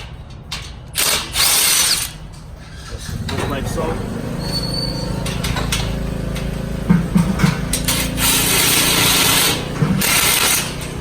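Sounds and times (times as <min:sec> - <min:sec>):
power tool with socket running: 0:01.0 - 0:11.0
sharp knocks: 0:05.0 - 0:11.0.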